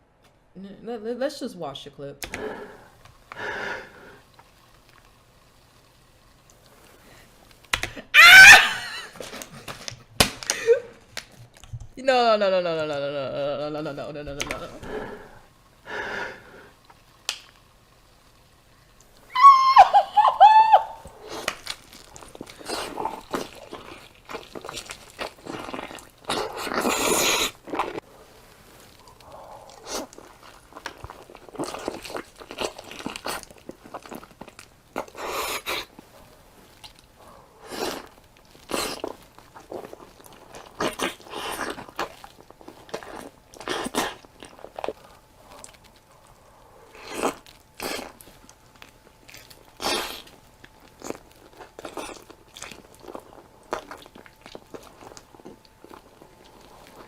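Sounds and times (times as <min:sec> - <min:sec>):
crunchy food being chewed: 0:21.0 - 0:57.0.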